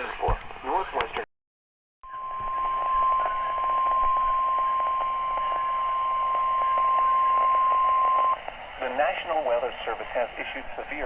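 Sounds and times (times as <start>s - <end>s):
radio static hiss: 0.0s - 1.3s, 2.1s - 11.0s
high-pitched warning alarm tone: 2.0s - 8.4s.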